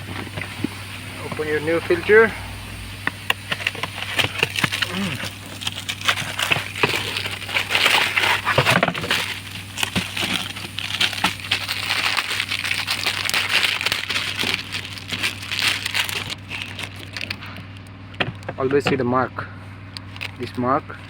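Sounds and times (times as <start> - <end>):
packaging crinkling: 0.1 - 17.9.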